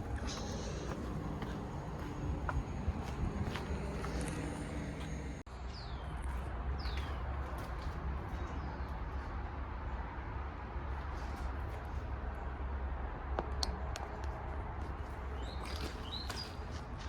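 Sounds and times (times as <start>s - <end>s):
low rumble: 0.0s - 5.5s.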